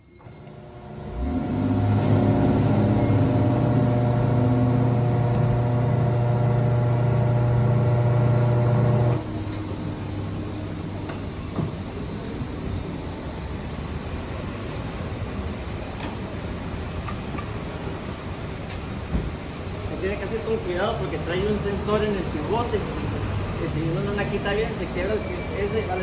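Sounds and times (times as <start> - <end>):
motor humming: 0.2 - 11.0.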